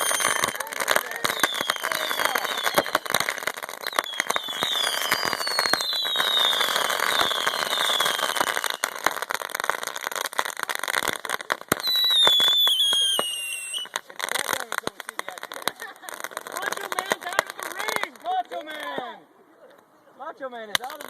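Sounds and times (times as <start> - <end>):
fireworks whistles falling in pitch: 0.0 - 9.6, 11.7 - 14.0
fireworks crackling: 0.0 - 19.3, 20.4 - 21.0.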